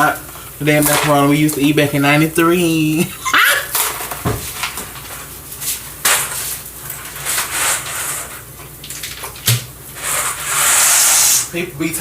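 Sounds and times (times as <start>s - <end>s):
cookware and utensils clattering: 0.7s - 1.7s, 3.2s - 5.2s.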